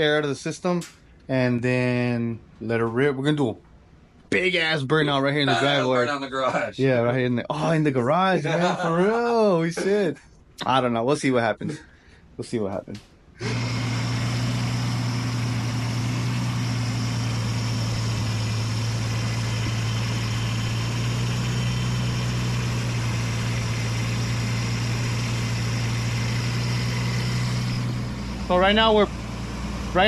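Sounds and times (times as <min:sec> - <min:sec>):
car engine idling: 0:13.4 - 0:30.0.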